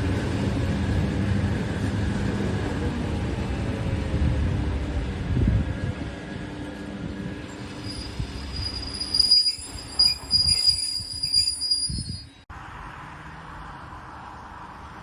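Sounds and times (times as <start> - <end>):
train wheels squealing: 7.6 - 12.4.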